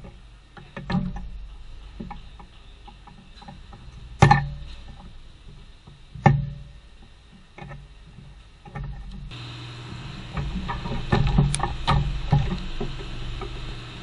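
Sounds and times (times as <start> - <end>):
tools tapping and clicking: 0.0 - 9.3.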